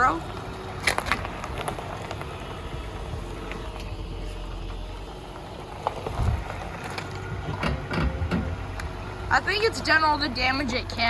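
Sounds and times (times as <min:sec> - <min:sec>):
car engine rumbling: 0:00.0 - 0:11.0.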